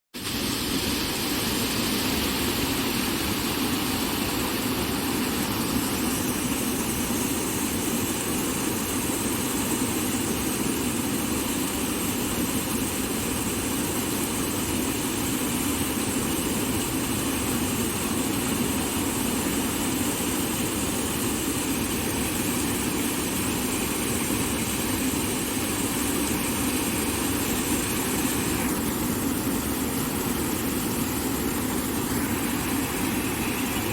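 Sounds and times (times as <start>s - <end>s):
water rushing: 25.3s - 33.9s.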